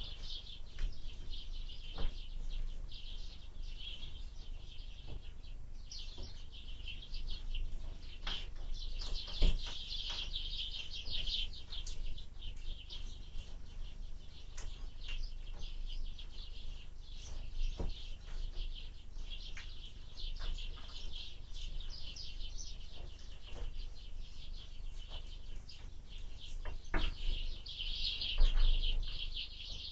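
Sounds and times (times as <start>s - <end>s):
small birds chirping: 0.0s - 29.9s.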